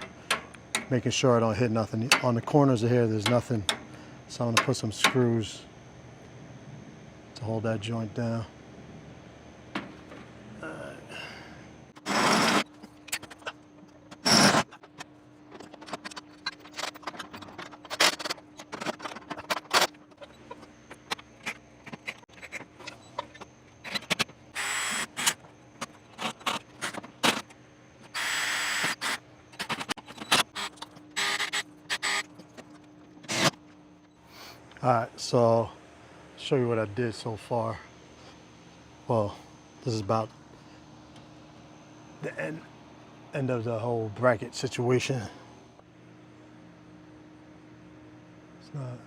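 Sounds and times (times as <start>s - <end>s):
clicks and clatter of handling tools: 12.8s - 24.4s
cordless drill driving screws: 28.2s - 29.2s.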